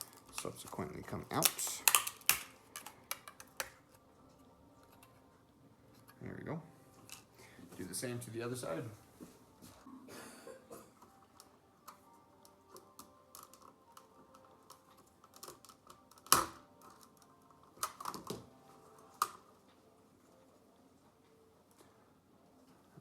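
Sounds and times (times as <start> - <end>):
plastic parts clicking: 1.3 - 4.0, 12.8 - 18.5.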